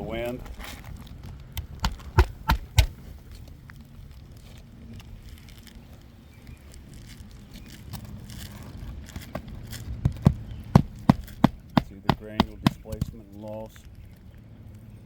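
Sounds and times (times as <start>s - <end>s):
roof shingles rustling: 0.0s - 14.0s
hammer blows: 1.8s - 3.0s.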